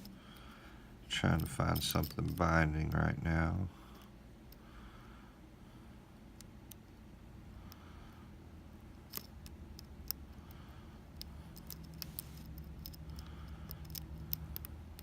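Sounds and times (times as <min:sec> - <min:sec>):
lock pick clicking in lock: 0:11.2 - 0:15.0.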